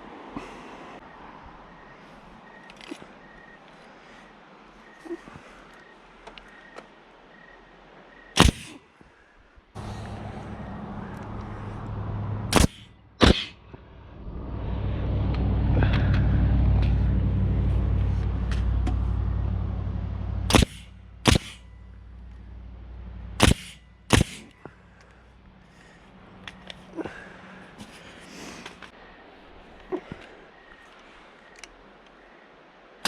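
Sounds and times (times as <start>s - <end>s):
soft clicks: 5.7s - 6.9s
sharp bangs: 8.4s - 8.8s, 12.4s - 13.6s, 20.4s - 21.8s, 23.4s - 24.6s
engine humming: 9.8s - 33.0s.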